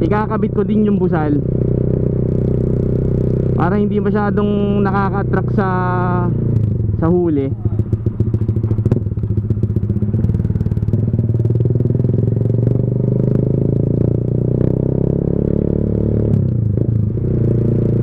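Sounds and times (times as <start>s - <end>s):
loud motorcycle exhaust: 0.0s - 18.0s.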